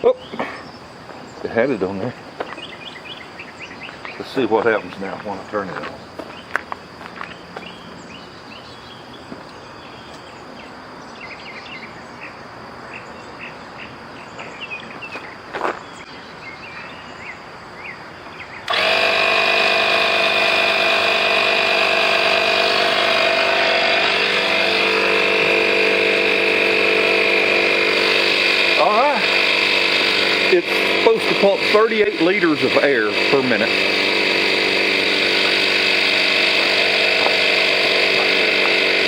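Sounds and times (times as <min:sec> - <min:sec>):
faint chirping: 0:00.0 - 0:06.6
tire inflator air compressor running: 0:00.4 - 0:09.4, 0:18.6 - 0:39.0.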